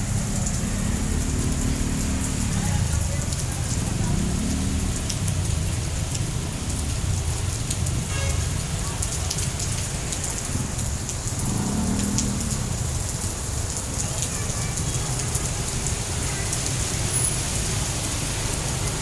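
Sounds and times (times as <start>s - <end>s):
heavy rain splattering: 0.0s - 19.0s.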